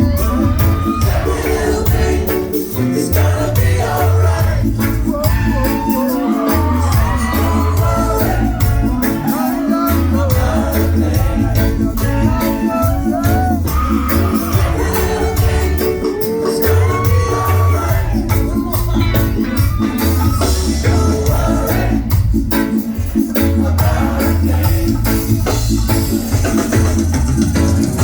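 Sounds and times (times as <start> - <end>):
lead singer: 0.0 - 27.2
heavy pulsing bass line: 0.0 - 28.0
live reggae band: 0.0 - 28.0.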